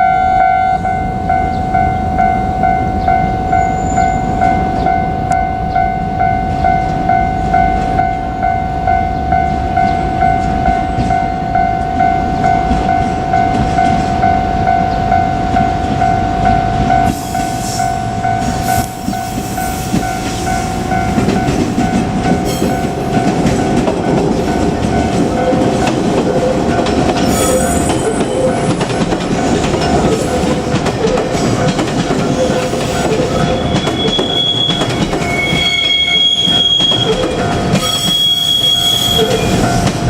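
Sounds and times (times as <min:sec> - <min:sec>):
level crossing warning bell: 0:00.0 - 0:40.0
train rail noise and clatter: 0:00.7 - 0:40.0
train wheel squeal: 0:03.1 - 0:04.9, 0:17.0 - 0:23.0, 0:27.1 - 0:40.0.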